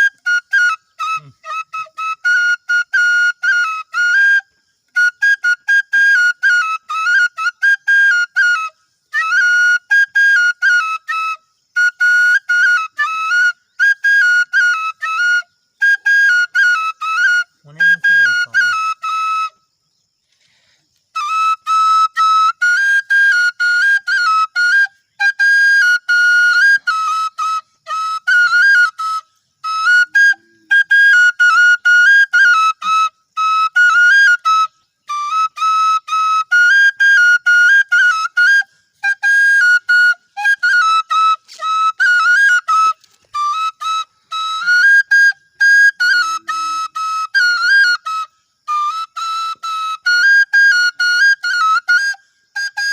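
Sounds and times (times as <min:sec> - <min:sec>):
bamboo flute melody: 0:00.0 - 0:52.9.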